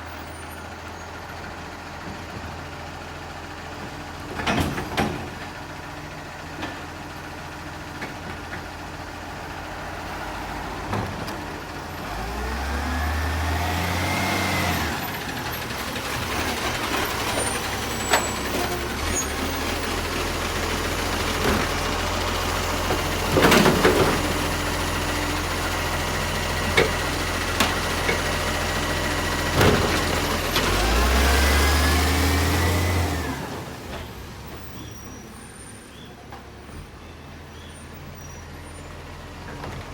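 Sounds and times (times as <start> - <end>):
garbage truck engine revving: 7.3 - 35.8.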